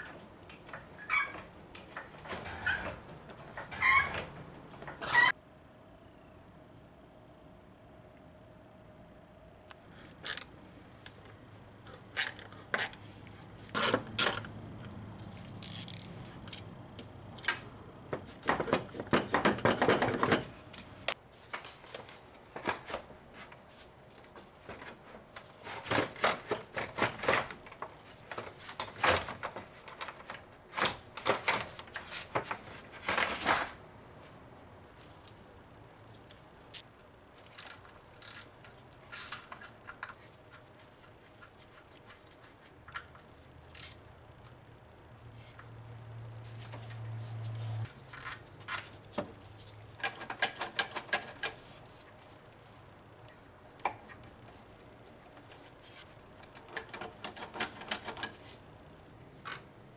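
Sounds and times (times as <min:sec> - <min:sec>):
hand tools clicking and tapping: 0:50.0 - 0:51.6.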